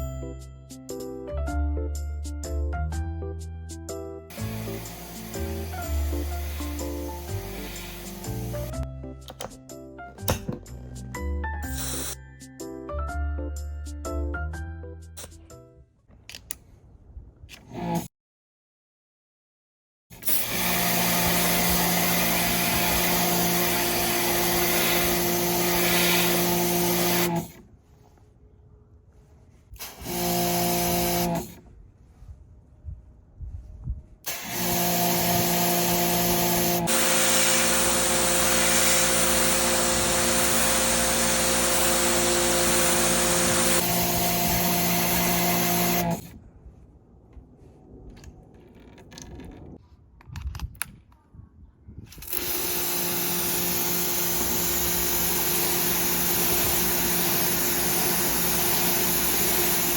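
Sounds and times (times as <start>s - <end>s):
pressure washer motor humming: 4.3s - 8.8s, 20.2s - 27.6s, 29.8s - 31.6s, 34.3s - 46.3s, 52.3s - 59.9s
water spray hissing: 4.3s - 8.8s, 11.6s - 12.2s, 20.6s - 27.5s, 34.3s - 46.2s, 52.5s - 59.9s.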